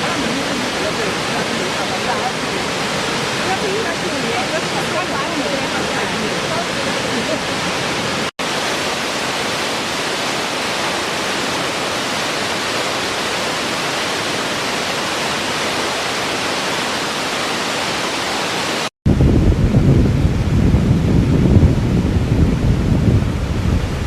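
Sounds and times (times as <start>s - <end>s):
waterfall rushing: 0.0s - 18.9s.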